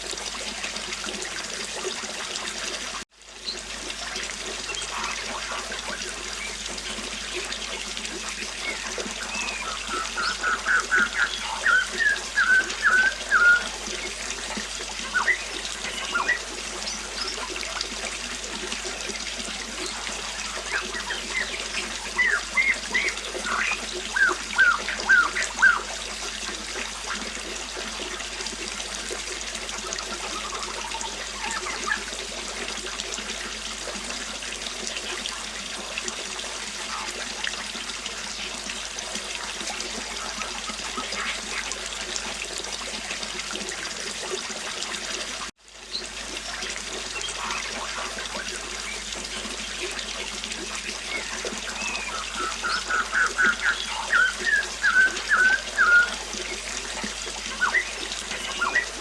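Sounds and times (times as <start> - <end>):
river flowing and burbling: 0.0 - 59.0
small birds chirping: 8.5 - 14.2, 15.0 - 17.6, 18.9 - 25.9, 50.8 - 59.0.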